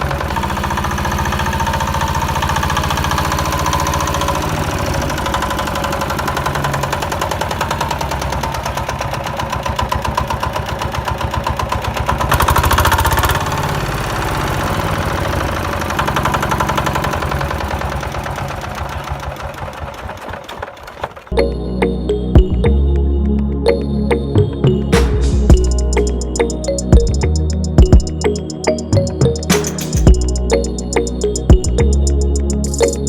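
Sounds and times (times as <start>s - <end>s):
small tractor engine pulsing: 0.0s - 22.5s.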